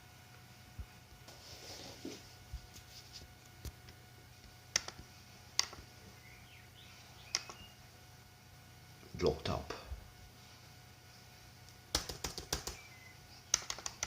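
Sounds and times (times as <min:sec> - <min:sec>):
faint electronic hum: 0:00.0 - 0:14.0
sharp clicks: 0:04.7 - 0:05.0, 0:05.6 - 0:05.8, 0:07.3 - 0:07.6, 0:11.9 - 0:12.8, 0:13.5 - 0:14.0.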